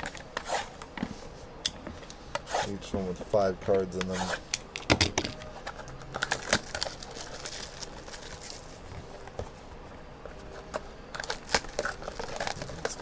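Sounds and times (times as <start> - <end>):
plastic wrapping rustling: 5.3 - 9.8, 10.5 - 13.0.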